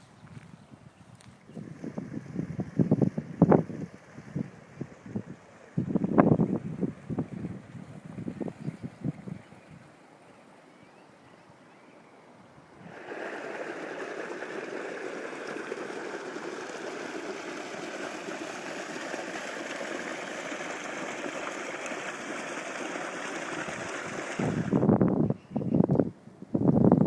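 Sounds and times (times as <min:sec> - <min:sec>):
floodwater rushing: 0:12.7 - 0:24.9.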